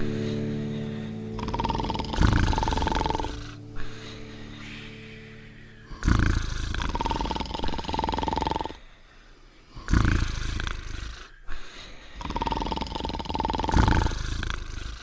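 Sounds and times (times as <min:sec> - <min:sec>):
cartoon dog snoring: 0:01.4 - 0:04.1, 0:05.9 - 0:08.8, 0:09.7 - 0:11.4, 0:12.1 - 0:15.0.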